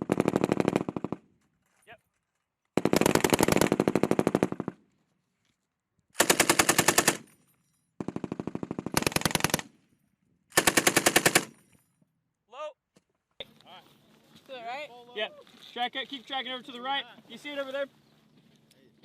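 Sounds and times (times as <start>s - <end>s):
machine gun automatic fire: 0.0s - 1.2s, 2.8s - 4.8s, 6.2s - 7.3s, 8.0s - 9.7s, 10.5s - 11.6s.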